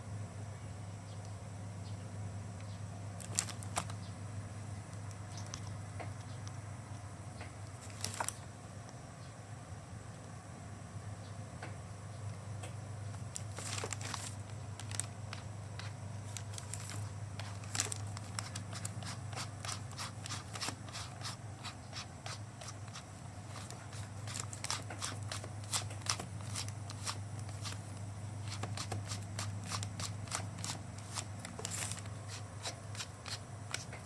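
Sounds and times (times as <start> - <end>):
steady low hum: 0.0 - 34.0
clicks and crinkles of handling: 2.6 - 4.1, 4.8 - 6.6, 7.4 - 9.0, 11.6 - 34.0.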